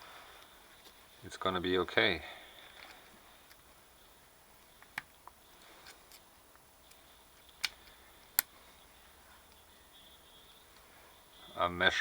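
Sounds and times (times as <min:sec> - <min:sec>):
light handling ticks: 0:00.3 - 0:11.5
test probes clicking on terminals: 0:04.6 - 0:08.6.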